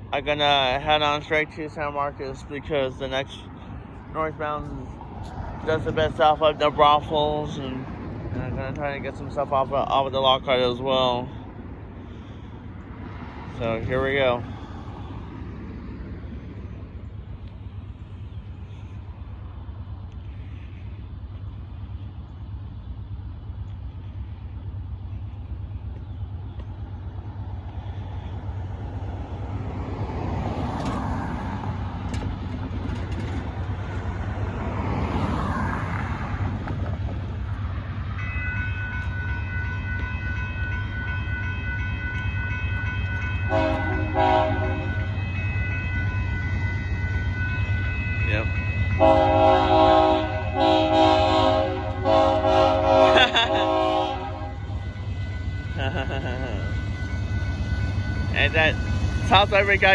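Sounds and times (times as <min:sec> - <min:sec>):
diesel locomotive rumble: 0:00.0 - 0:59.9
crossing bell ringing: 0:37.3 - 0:59.9
locomotive horn short notes: 0:38.2 - 0:59.9.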